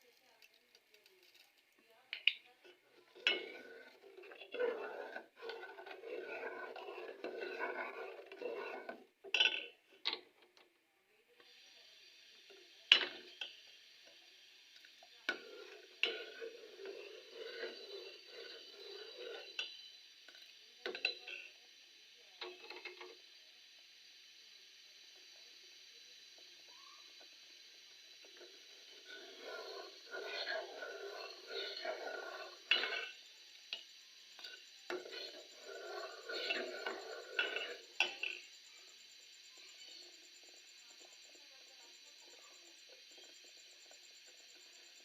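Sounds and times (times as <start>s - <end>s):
steady hiss: 0.0s - 10.4s, 11.2s - 45.0s
spoon stirring in pot: 0.4s - 10.4s, 14.8s - 21.5s, 28.0s - 38.4s.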